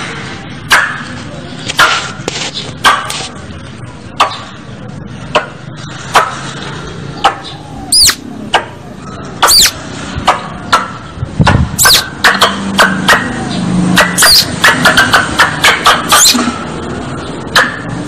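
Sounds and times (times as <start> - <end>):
squirrel chip calls: 7.2 - 8.3, 9.4 - 9.8, 11.8 - 12.1, 14.0 - 14.6, 15.8 - 16.5
squirrel high-pitched calls: 7.4 - 8.3, 9.4 - 9.8, 11.8 - 12.1, 14.2 - 14.6, 15.9 - 16.4.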